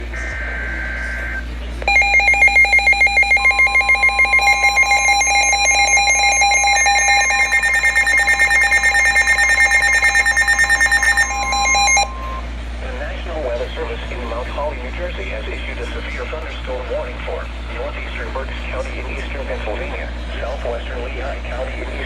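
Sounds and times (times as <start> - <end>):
high two-pitch data warble: 1.9 - 12.4
rapid electronic alert beeps: 1.9 - 12.4
steady warning alarm tone: 1.9 - 12.4.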